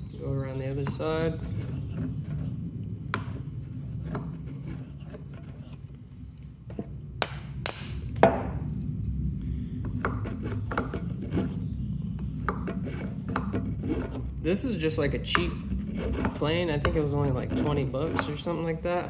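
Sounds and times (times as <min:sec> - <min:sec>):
hand plane scraping wood: 0:12.3 - 0:14.3, 0:15.3 - 0:18.6.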